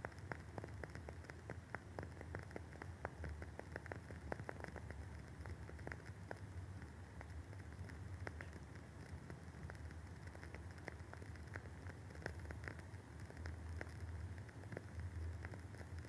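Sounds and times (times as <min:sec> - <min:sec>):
low steady hum: 0:00.0 - 0:16.0
candle wick crackling: 0:00.1 - 0:16.0.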